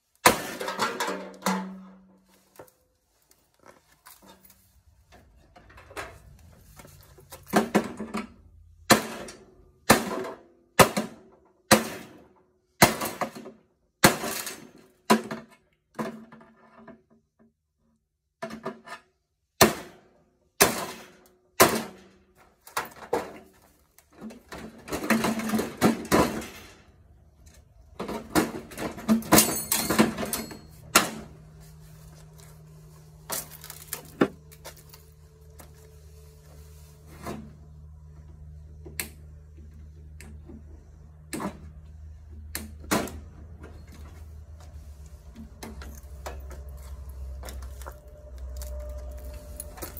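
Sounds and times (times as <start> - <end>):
loose metal parts rattling: 22.7 - 31.3, 32.1 - 35.2
metallic ring: 29.3 - 30.9.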